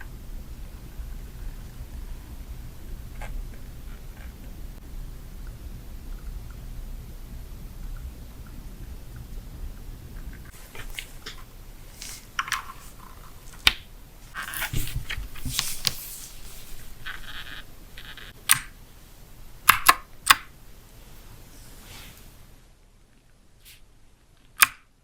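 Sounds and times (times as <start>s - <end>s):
packaging rustling: 10.5s - 13.6s, 14.2s - 17.5s
keyboard clicks: 18.0s - 18.8s, 19.6s - 20.5s.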